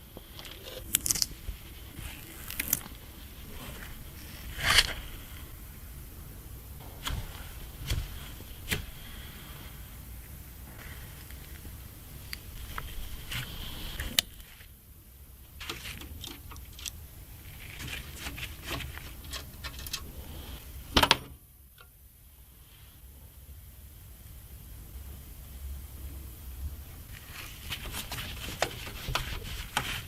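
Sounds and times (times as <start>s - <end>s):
handling rustle: 0.0s - 5.5s, 6.8s - 14.8s, 15.6s - 20.2s, 27.1s - 30.0s.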